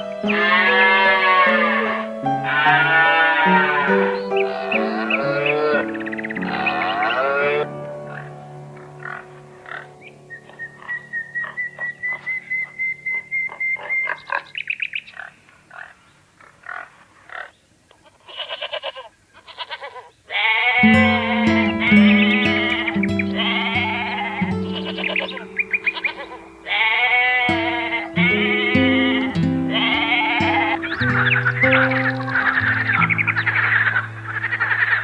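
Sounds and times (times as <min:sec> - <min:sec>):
sheep bleating: 0:00.0 - 0:08.3, 0:18.3 - 0:35.0
background music low held notes: 0:00.0 - 0:13.9, 0:20.8 - 0:35.0.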